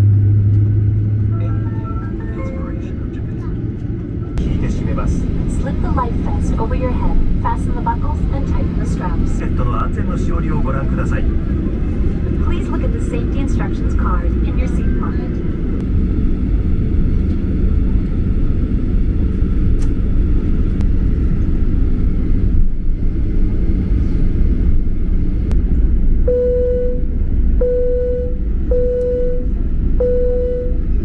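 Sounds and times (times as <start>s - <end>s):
jet engines rumbling in cabin: 0.0s - 31.0s
short low tones: 26.2s - 31.0s.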